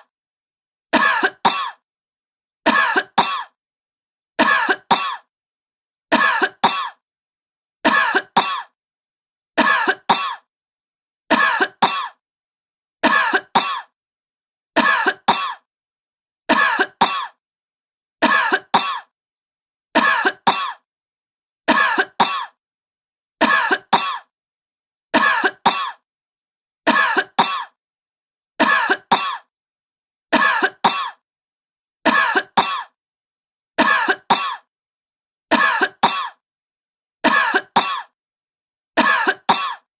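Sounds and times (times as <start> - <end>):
woman coughing: 1.0 - 1.8, 2.7 - 3.6, 4.4 - 5.3, 6.1 - 7.0, 7.9 - 8.8, 9.6 - 10.5, 11.3 - 12.2, 13.1 - 14.0, 14.8 - 15.7, 16.5 - 17.4, 18.2 - 19.1, 20.0 - 20.9, 21.7 - 22.6, 23.4 - 24.3, 25.2 - 26.0, 26.9 - 27.8, 28.6 - 29.5, 30.4 - 31.2, 32.1 - 33.0, 33.8 - 34.7, 35.5 - 36.4, 37.3 - 38.2, 39.0 - 39.9.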